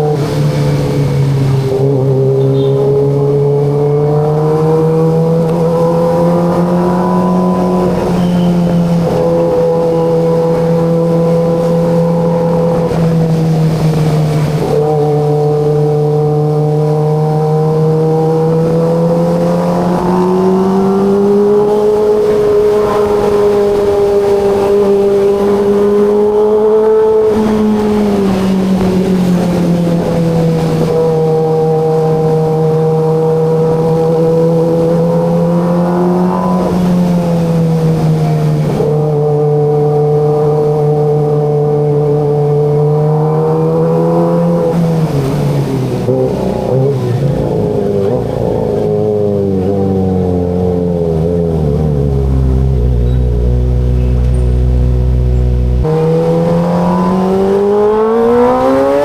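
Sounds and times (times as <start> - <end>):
motorcycle engine running: 45.2 - 59.0.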